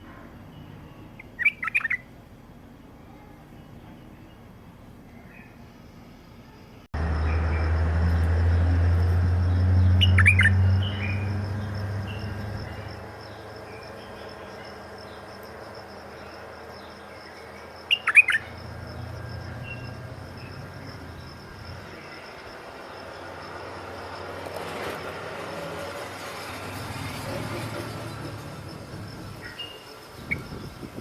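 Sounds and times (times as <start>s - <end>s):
soft bird chirps: 0.4s - 2.1s, 9.1s - 23.2s, 29.2s - 30.9s
faint high whine: 5.1s - 27.0s
low rumble: 7.0s - 13.6s
bird calling: 9.4s - 22.3s.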